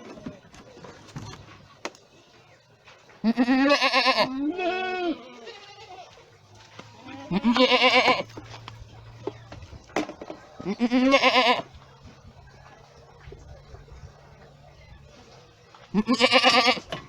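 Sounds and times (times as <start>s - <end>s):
goats bleating: 3.2s - 6.2s, 6.8s - 8.4s, 10.6s - 11.7s, 15.9s - 17.0s.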